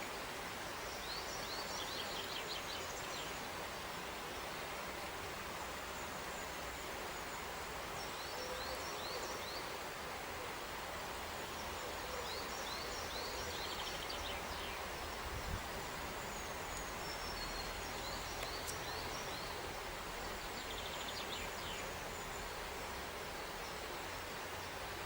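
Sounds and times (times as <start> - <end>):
outdoor background hiss: 0.0 - 25.0
songbird chirping and trilling: 0.8 - 3.5, 6.0 - 9.8, 11.4 - 22.7.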